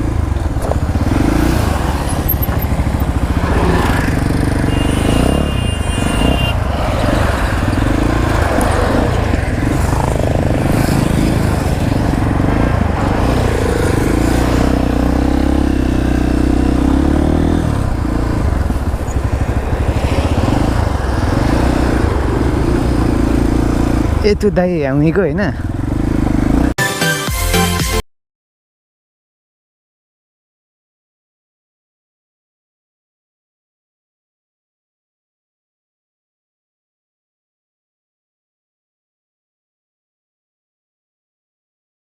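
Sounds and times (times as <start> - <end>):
motorcycle engines in traffic: 0.0 - 26.8.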